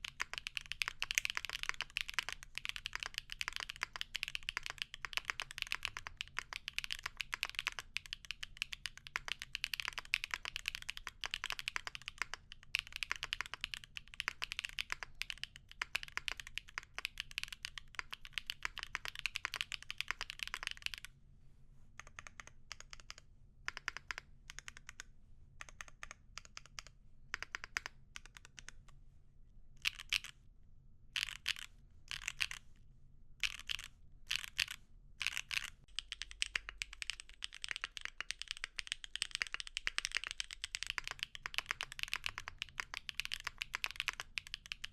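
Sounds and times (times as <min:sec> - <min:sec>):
mechanical keyboard typing: 0:00.0 - 0:21.1, 0:22.0 - 0:28.8, 0:29.8 - 0:30.3, 0:31.2 - 0:32.6, 0:33.4 - 0:44.9.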